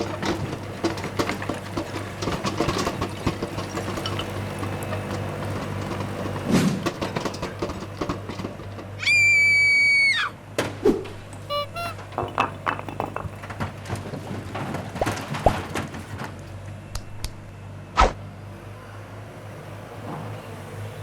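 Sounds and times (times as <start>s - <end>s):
clattering: 0.0s - 9.0s, 11.1s - 16.3s
scattered knocks: 0.0s - 9.0s, 11.1s - 15.9s
high whistle-like tone: 11.5s - 12.0s.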